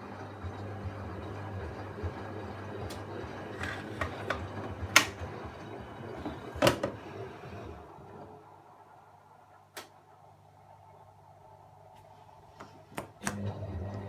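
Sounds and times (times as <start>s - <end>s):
washing machine motor hum: 0.0s - 14.0s
washing machine clicks: 2.8s - 7.1s.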